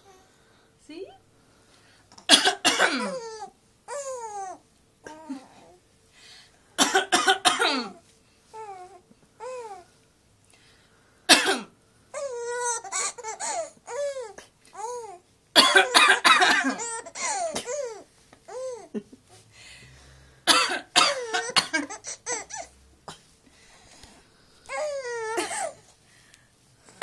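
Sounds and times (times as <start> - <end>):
woman coughing: 2.3 - 3.3, 6.8 - 8.0, 11.3 - 11.7, 15.6 - 18.0, 20.5 - 22.0, 25.3 - 25.8
baby laughing: 12.2 - 15.1, 16.6 - 19.0, 21.2 - 22.7.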